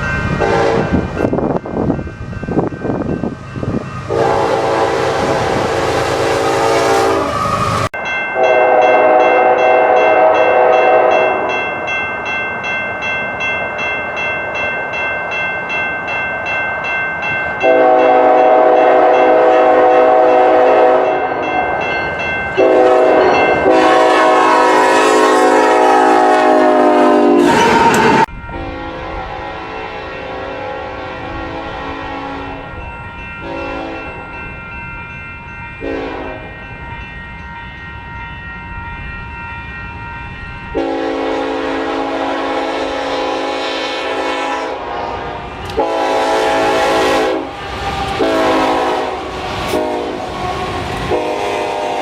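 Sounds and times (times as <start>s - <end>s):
rhythmic bell ringing: 0.0s - 4.2s, 8.0s - 23.9s, 32.4s - 41.2s
locomotive air horn blasts: 0.4s - 1.0s, 4.1s - 7.6s, 8.4s - 11.6s, 17.6s - 21.4s, 22.6s - 32.7s, 33.4s - 34.1s, 35.8s - 36.5s, 40.8s - 50.4s, 51.0s - 52.0s.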